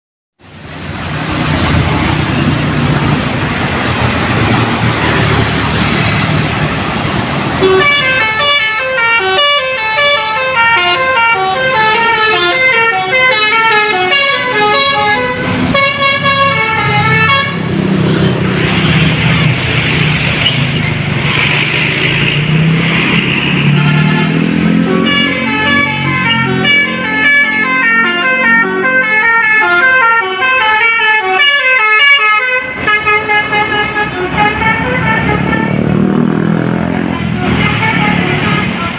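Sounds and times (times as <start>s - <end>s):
road noise: 0.3s - 38.9s
bus engine running: 0.4s - 29.0s
bus horn playing multi-tone tune: 7.6s - 17.8s, 23.6s - 38.9s.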